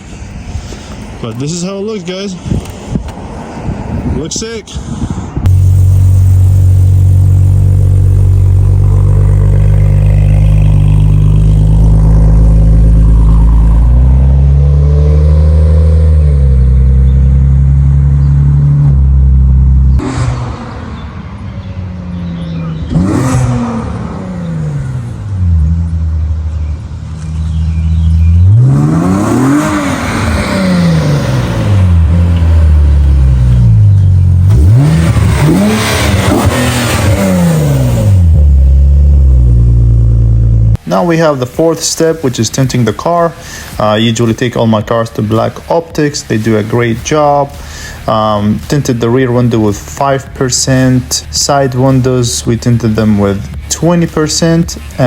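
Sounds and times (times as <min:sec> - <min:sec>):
car engine revving: 0:05.5 - 0:21.5, 0:22.1 - 0:26.7, 0:27.4 - 0:55.0.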